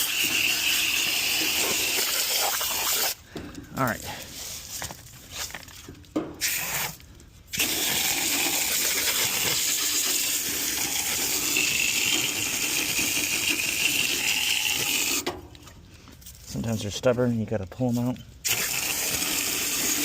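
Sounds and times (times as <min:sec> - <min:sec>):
hose spraying water: 0:00.0 - 0:03.2, 0:06.4 - 0:15.3, 0:18.4 - 0:20.0.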